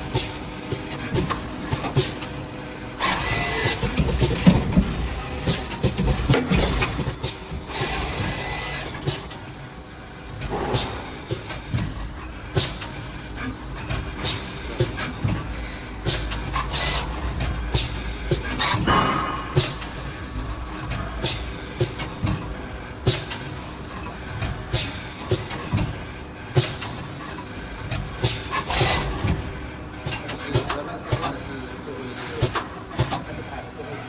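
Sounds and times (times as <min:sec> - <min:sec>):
high machine whine: 0:00.0 - 0:25.0
machine clattering and clicking: 0:00.0 - 0:33.6.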